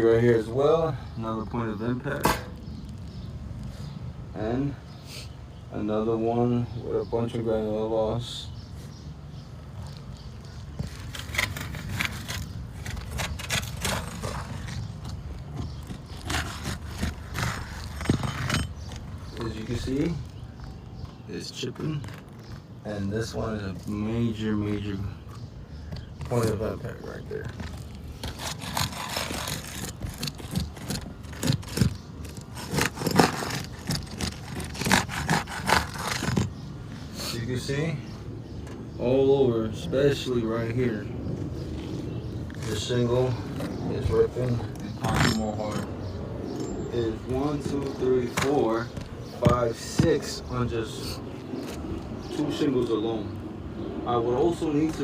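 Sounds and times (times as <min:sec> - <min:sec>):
scrapes and clicks on roof shingles: 0:09.8 - 0:20.4, 0:21.0 - 0:22.8, 0:25.3 - 0:36.7, 0:47.2 - 0:52.2.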